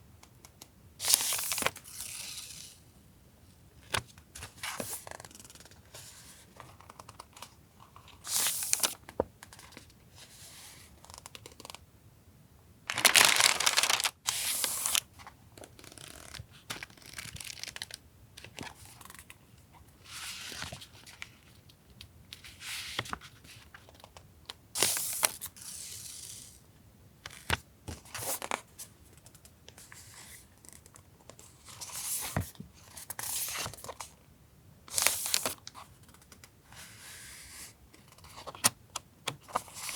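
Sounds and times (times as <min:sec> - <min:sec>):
paper and plastic rustling: 0:12.9 - 0:15.1.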